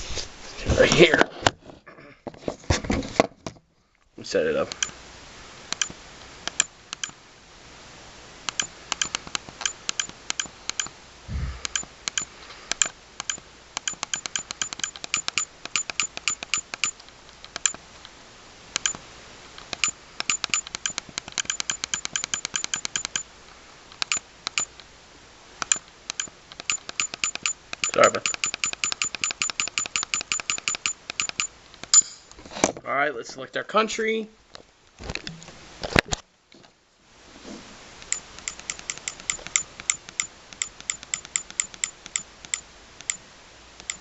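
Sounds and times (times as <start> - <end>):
camera button ticks: 4.7 - 5.0, 5.7 - 7.2, 8.5 - 10.9, 11.6 - 17.8, 18.8 - 19.0, 19.6 - 23.3, 24.0 - 24.7, 25.6 - 31.9, 38.0 - 43.2
low thump: 11.3 - 11.7.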